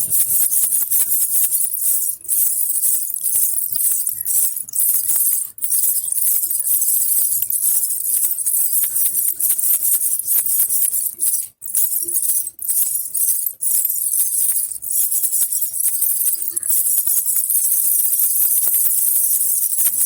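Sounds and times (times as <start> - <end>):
baby rattle bells jingling: 0.0 - 20.0.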